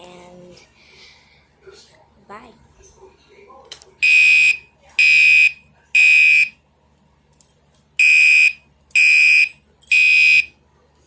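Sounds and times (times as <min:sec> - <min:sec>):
fire alarm horn beeping: 0:04.0 - 0:06.6, 0:08.0 - 0:10.6.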